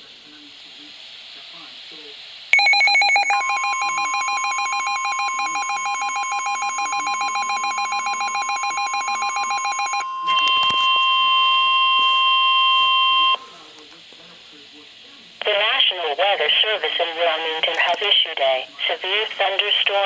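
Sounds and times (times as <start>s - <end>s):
warbling electronic alarm: 2.6s - 13.6s
steady alarm tone: 2.6s - 13.7s.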